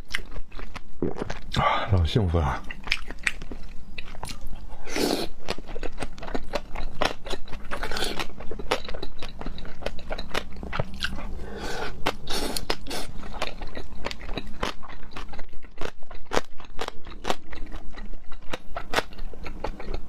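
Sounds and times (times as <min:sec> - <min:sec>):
person chewing crunchy food: 0:00.0 - 0:20.0.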